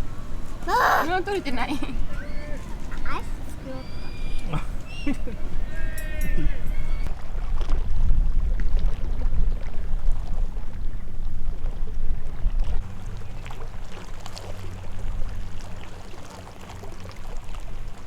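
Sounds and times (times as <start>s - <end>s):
wind buffeting microphone: 0.0s - 13.9s.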